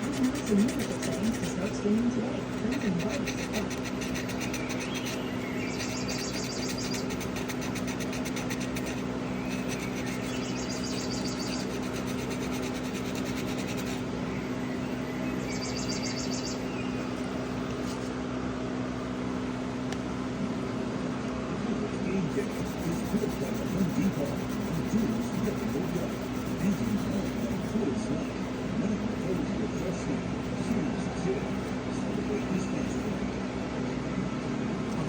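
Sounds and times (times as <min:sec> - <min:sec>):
metal rasping against grinding wheel: 0:00.0 - 0:17.2, 0:22.4 - 0:30.6
electric motor humming: 0:00.0 - 0:18.1, 0:22.2 - 0:33.3.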